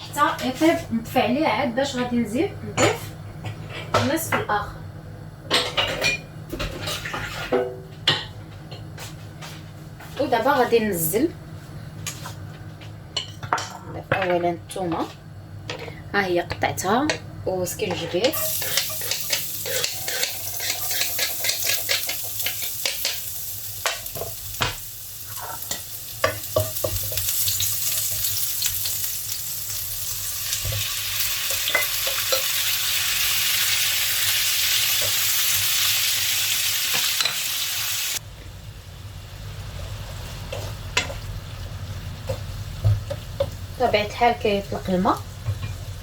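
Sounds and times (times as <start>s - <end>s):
garlic and ginger sizzling: 16.8s - 46.0s.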